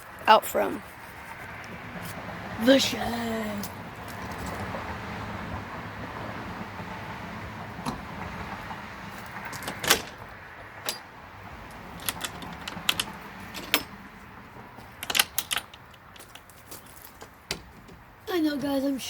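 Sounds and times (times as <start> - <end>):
sharp metallic clicks: 9.2 - 14.1, 14.9 - 16.6.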